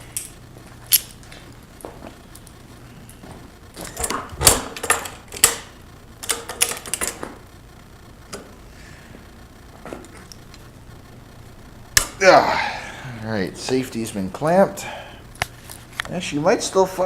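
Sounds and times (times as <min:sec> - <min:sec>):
clamp clicking and clattering: 0:03.8 - 0:07.4.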